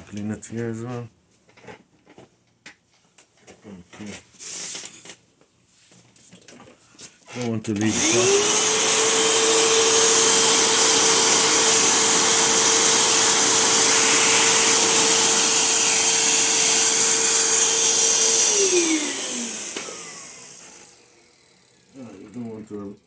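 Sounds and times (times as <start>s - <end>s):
vacuum cleaner motor whine: 7.8s - 22.5s.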